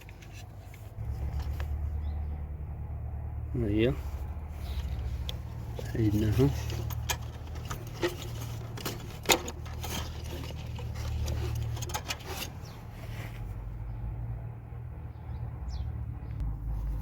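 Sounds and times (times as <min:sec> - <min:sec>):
metal tools clinking: 0:04.6 - 0:12.9.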